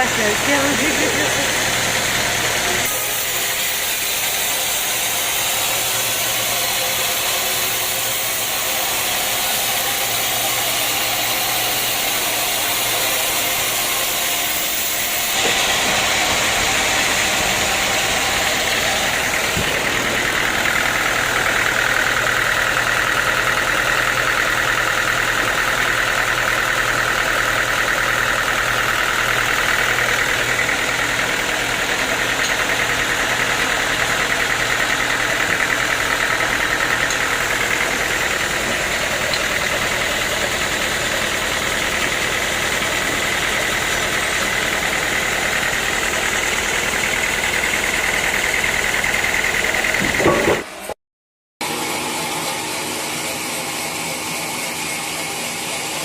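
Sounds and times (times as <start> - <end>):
sawmill machinery running: 0.0 - 51.0, 51.6 - 56.0
steady high whine: 15.4 - 24.4.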